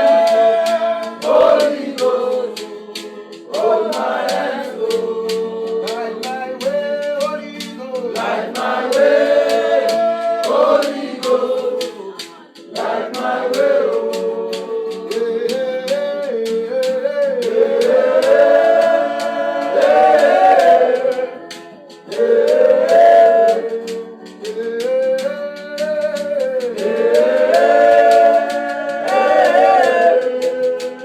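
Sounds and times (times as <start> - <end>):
backing music: 0.0 - 31.0
light percussive tick: 0.0 - 31.0
wordless worship singing: 0.0 - 31.0.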